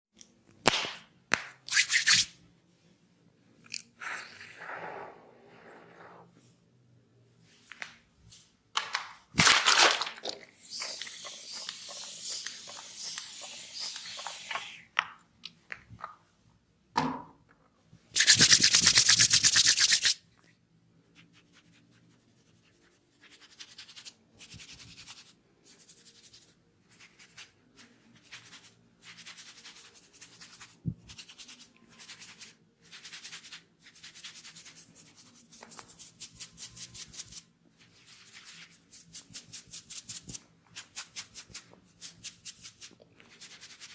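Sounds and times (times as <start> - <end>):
hands rubbing hair and scalp: 21.2 - 43.9.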